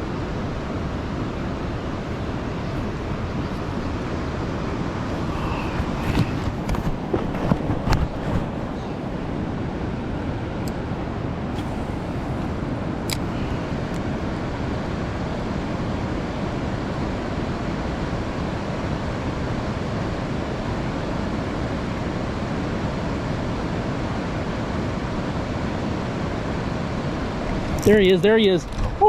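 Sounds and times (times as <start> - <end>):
creek water flowing: 1.1 - 14.7.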